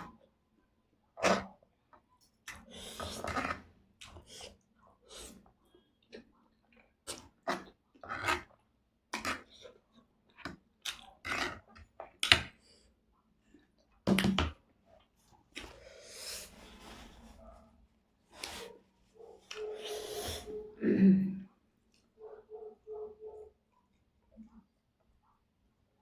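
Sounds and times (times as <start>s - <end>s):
slurping: 2.5s - 5.5s, 19.4s - 20.8s.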